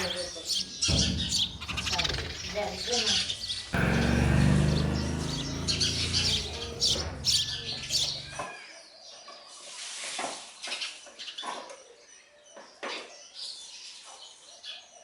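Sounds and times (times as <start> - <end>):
sparrows chirping: 0.0 - 9.1
low machine hum: 3.8 - 8.4.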